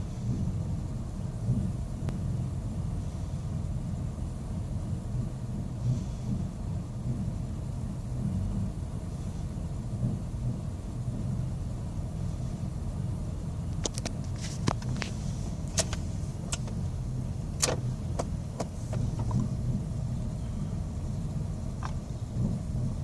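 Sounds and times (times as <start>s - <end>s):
car engine idling roughly: 0.0s - 23.0s
sharp clicks: 15.6s - 16.8s, 17.5s - 19.5s.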